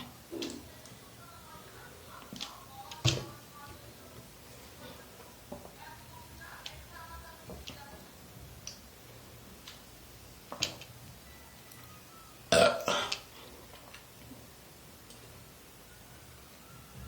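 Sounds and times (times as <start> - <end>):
woman burping: 12.5 - 13.2.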